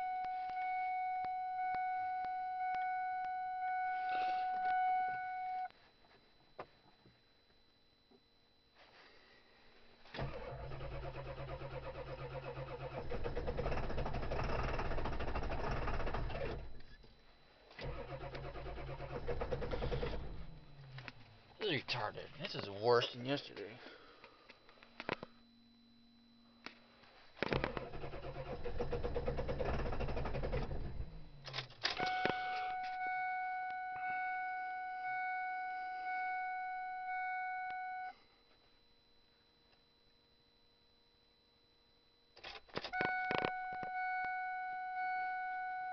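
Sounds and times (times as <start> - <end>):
dashboard warning chime: 0.0 - 5.7, 32.0 - 38.2, 43.0 - 45.9
diesel engine cranking: 10.2 - 16.9, 17.8 - 21.2, 27.5 - 32.0.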